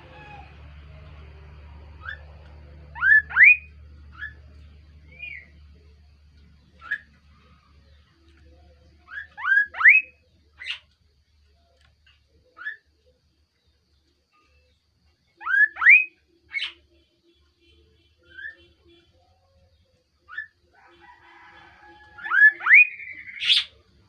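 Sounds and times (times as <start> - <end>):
bird whistling call: 3.0 - 4.4, 9.1 - 10.8, 15.4 - 16.8, 22.2 - 23.7.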